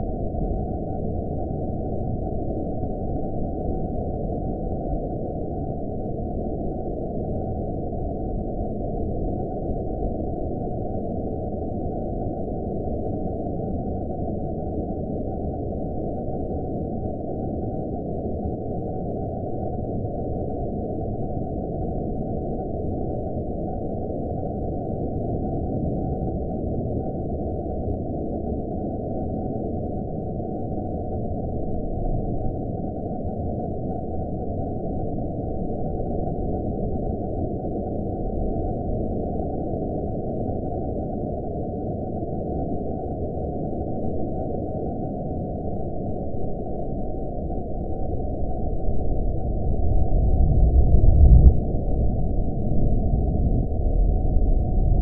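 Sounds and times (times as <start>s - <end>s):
low rumbling drone: 45.7s - 55.0s.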